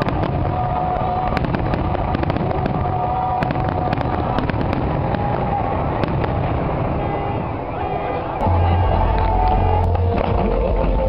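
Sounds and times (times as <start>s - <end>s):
sharp fireworks cracks and crackles: 0.0s - 7.4s
low rumble of explosions: 0.0s - 11.0s.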